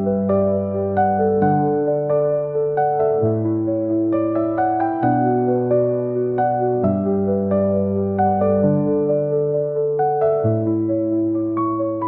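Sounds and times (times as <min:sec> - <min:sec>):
gentle electric piano music: 0:00.0 - 0:12.0.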